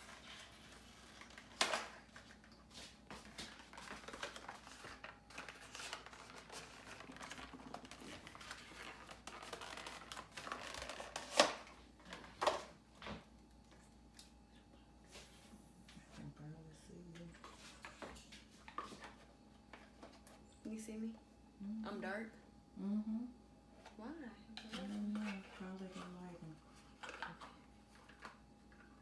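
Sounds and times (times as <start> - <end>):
wrapping paper rustling: 0.0 - 12.6.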